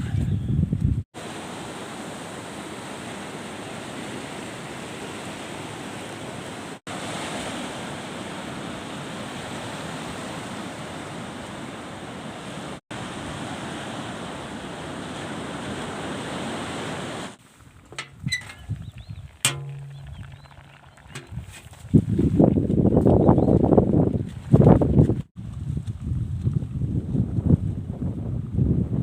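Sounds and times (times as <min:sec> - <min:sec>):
wind: 0:00.0 - 0:29.0
sea waves washing on shore: 0:01.2 - 0:17.6.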